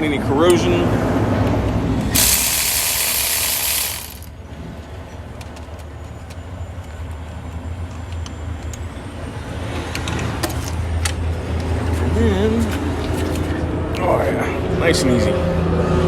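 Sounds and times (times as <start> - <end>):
pneumatic tool hissing: 2.0 - 4.3.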